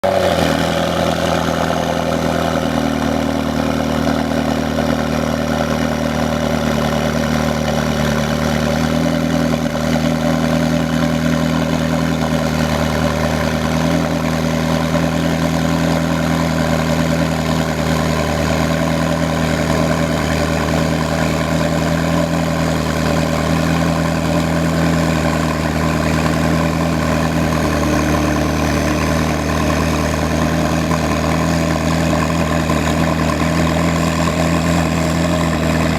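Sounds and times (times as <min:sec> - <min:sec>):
sports car engine idling: 0:00.0 - 0:35.9.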